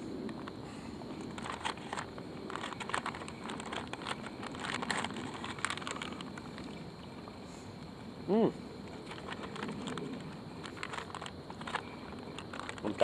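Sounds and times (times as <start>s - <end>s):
plastic pouch crinkling: 1.3s - 6.8s, 9.0s - 13.0s.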